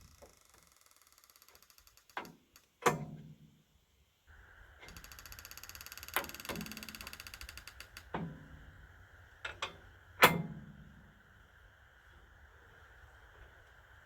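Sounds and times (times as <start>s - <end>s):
rapid mechanical clicking: 0.0s - 3.0s, 4.8s - 8.5s
faint high whine: 4.3s - 14.0s.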